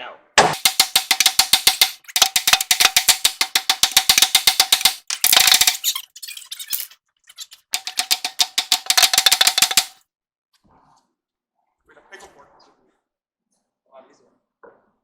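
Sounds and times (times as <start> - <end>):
hammer striking metal steering arm: 0.4 - 5.9.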